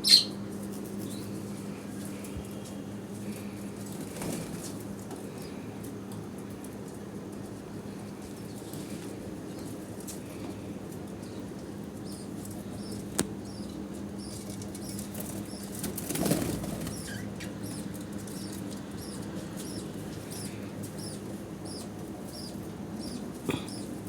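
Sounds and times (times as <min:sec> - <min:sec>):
budgerigars chirping: 0:00.0 - 0:00.3, 0:16.3 - 0:23.9
steady low hum: 0:07.2 - 0:24.0
wings flapping: 0:15.0 - 0:17.3.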